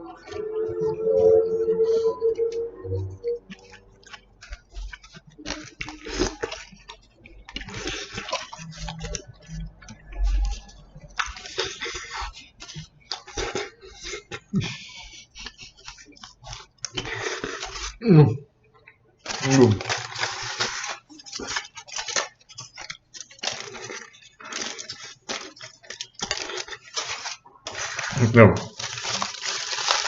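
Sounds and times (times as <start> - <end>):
wet chewing and mouth clicks: 3.4 - 18.0, 18.8 - 30.0.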